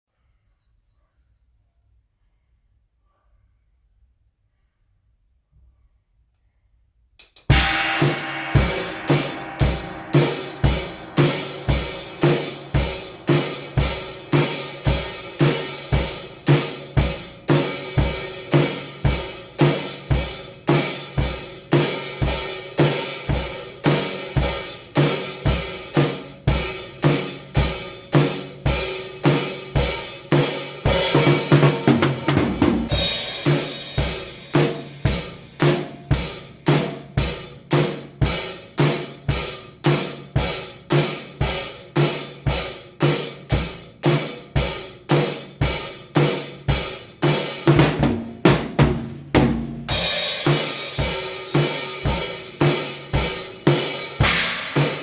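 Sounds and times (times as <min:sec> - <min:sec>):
drum kit playing: 0:07.4 - 0:55.0
cymbal crash: 0:07.5 - 0:24.6, 0:28.9 - 0:37.5, 0:49.4 - 0:55.0.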